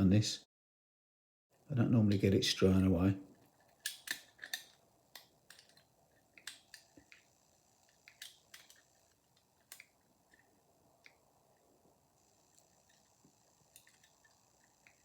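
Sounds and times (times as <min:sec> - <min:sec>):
lock picks clicking: 0:03.5 - 0:11.2, 0:13.7 - 0:15.0.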